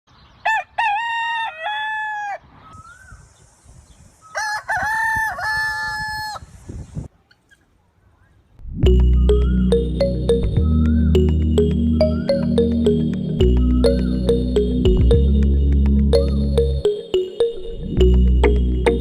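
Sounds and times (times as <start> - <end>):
rooster crowing: 0.4 - 2.5, 4.3 - 6.5.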